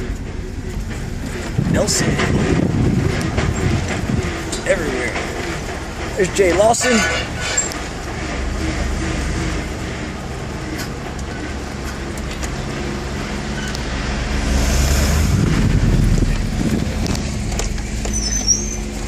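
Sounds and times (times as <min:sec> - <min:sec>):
car driving rumble from inside: 0:00.0 - 0:06.2, 0:07.7 - 0:19.0
rush of noise: 0:12.6 - 0:17.8.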